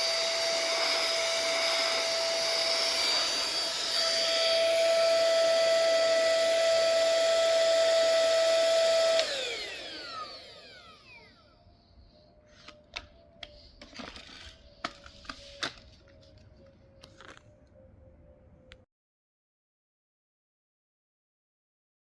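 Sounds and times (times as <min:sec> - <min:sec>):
vacuum motor winding down: 0:00.0 - 0:15.8
handheld vacuum cleaner whine: 0:00.0 - 0:17.9.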